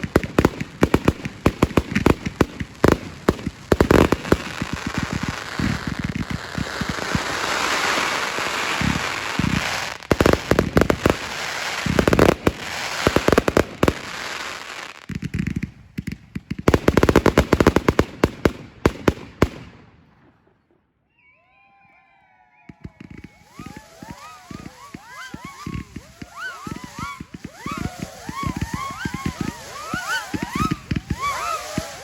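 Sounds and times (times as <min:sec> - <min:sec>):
fireworks bangs and crackling: 0:00.0 - 0:20.8, 0:22.7 - 0:32.0
faint firework whistles: 0:03.7 - 0:15.0, 0:20.6 - 0:32.0
rushing hiss: 0:23.4 - 0:32.0.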